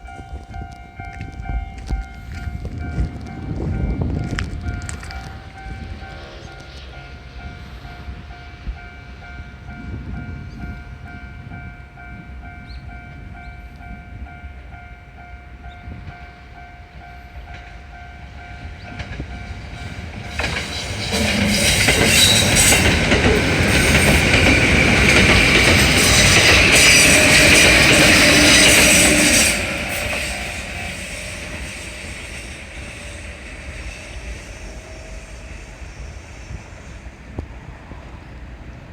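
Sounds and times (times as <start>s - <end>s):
train wheels clattering on rail: 0.0s - 14.2s, 15.7s - 38.4s
level-crossing alarm ringing: 12.1s - 36.5s.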